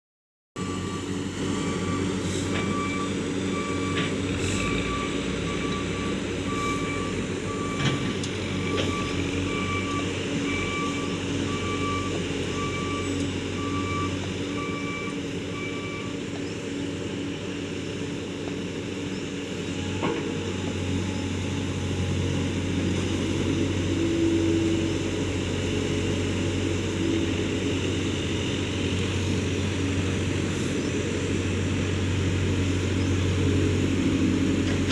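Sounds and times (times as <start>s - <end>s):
reversing alarm beeping: 0.6s - 16.3s
road roller engine running: 0.6s - 34.9s.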